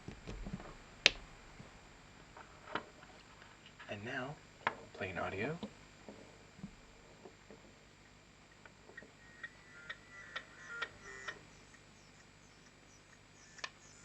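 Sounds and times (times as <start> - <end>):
small speaker ticks and high notes: 9.2 - 14.0.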